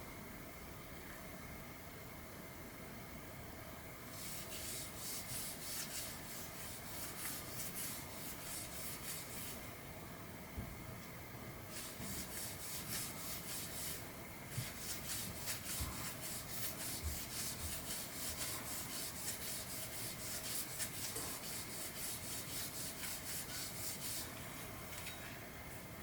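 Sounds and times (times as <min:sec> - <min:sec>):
hand rubbing on metal: 0:04.1 - 0:09.6, 0:11.7 - 0:24.3.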